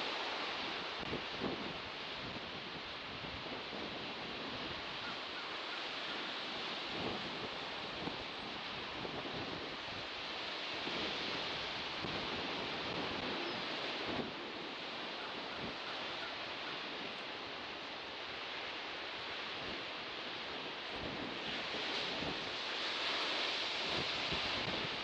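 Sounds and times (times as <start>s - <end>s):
sea waves washing ashore: 0.0s - 25.0s.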